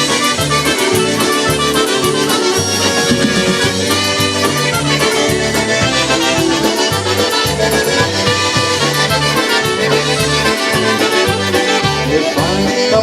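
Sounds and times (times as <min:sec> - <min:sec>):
accordion: 0:00.0 - 0:13.0
oom-pah bass line: 0:00.0 - 0:13.0
polka band playing: 0:00.0 - 0:13.0
steady cymbal beat: 0:02.4 - 0:04.9.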